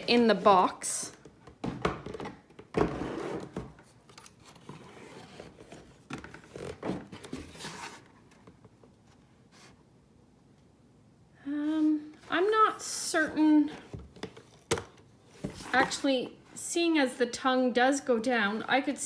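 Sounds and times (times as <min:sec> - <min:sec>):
cardboard and plastic scraping: 0:00.0 - 0:09.8, 0:13.6 - 0:16.3.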